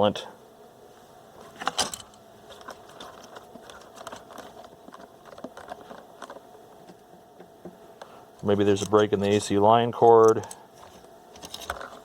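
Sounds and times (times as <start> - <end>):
faint clicks and crackles: 2.5 - 12.0.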